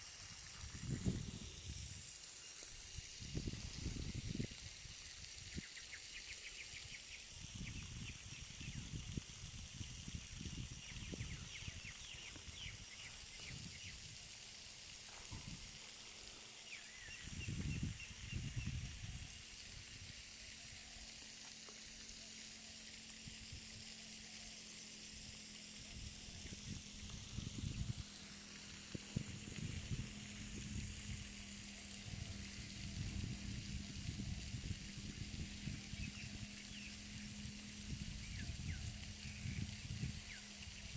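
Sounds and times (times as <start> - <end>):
waterfall hiss: 0.0 - 40.9
wind rumble on microphone: 0.4 - 2.1, 2.9 - 5.8, 6.7 - 14.3, 15.2 - 15.8, 17.0 - 20.1, 25.8 - 28.1, 28.7 - 40.9.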